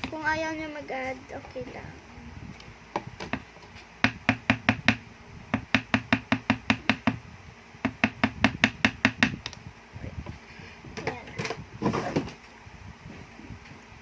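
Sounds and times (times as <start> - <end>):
hard object tapping hollow container: 5.6 - 7.2.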